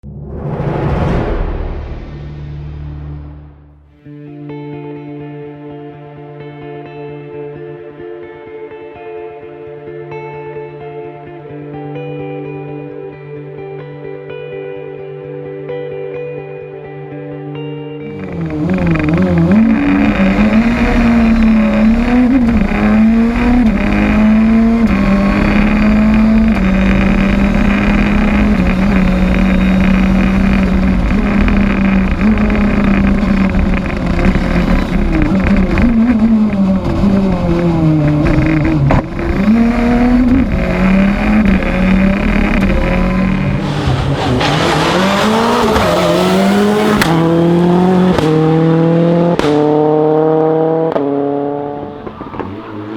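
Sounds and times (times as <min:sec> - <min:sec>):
race car engine at high revs: 0:18.1 - 0:52.9.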